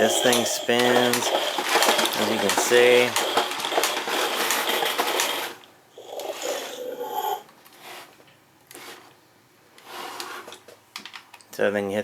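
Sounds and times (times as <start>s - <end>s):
toy motor whirring and rattling: 0.0s - 8.1s.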